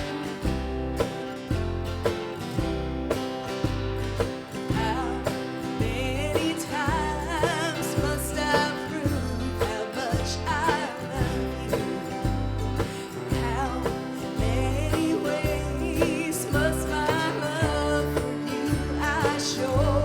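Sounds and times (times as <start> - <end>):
acoustic guitar: 0.0 - 20.0
person singing with vibrato: 4.7 - 20.0.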